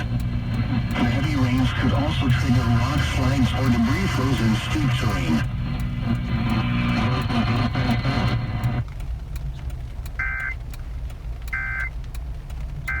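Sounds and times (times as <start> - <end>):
broadcast noise: 0.0 - 9.5
low steady rumble: 0.0 - 13.0.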